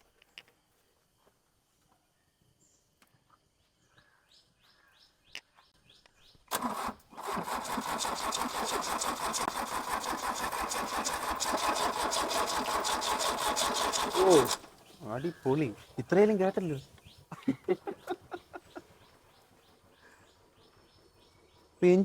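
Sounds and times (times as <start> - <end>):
diesel engine cranking: 6.5 - 16.9.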